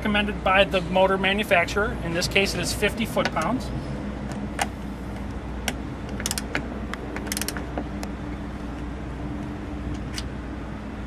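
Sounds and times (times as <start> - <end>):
torque wrench ratcheting: 6.1 - 6.6, 7.2 - 7.7.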